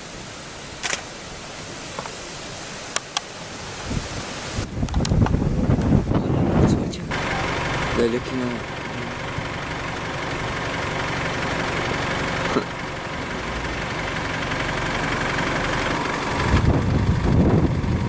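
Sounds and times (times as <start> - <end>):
low rumbling: 3.7 - 18.0
engine idling: 6.2 - 18.0.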